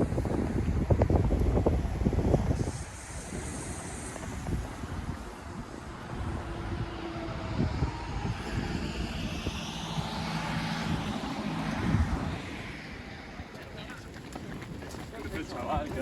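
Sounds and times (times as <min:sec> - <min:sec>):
hiss: 0:00.0 - 0:07.1, 0:08.2 - 0:12.4.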